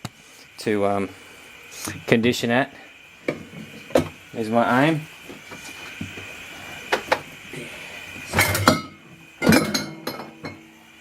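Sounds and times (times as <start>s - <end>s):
glass clinking and clattering: 8.4s - 10.7s.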